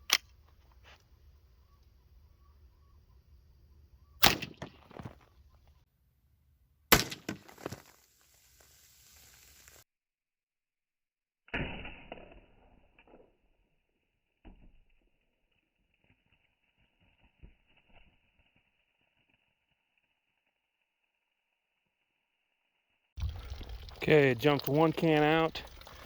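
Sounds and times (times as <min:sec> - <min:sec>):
rifle shots: 0:04.2 - 0:04.8, 0:06.9 - 0:07.5.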